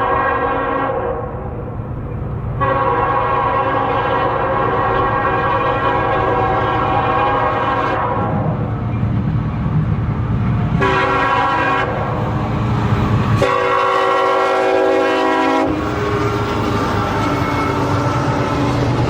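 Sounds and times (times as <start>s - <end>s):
train horn blasts: 0.0s - 1.4s, 2.6s - 8.6s, 10.8s - 12.2s, 13.4s - 16.4s
moving train rumble: 0.0s - 19.0s.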